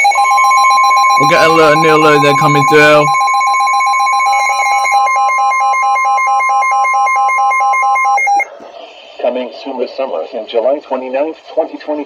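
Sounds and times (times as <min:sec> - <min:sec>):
lower rapid beeping: 0:00.0 - 0:08.5
steady alarm tone: 0:00.0 - 0:08.5.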